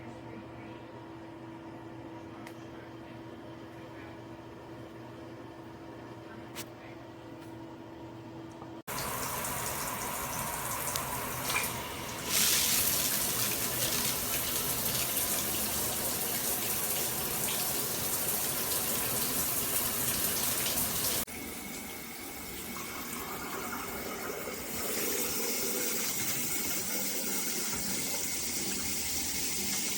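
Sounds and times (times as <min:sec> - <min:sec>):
shower spraying water: 0:08.9 - 0:21.9, 0:22.6 - 0:29.9.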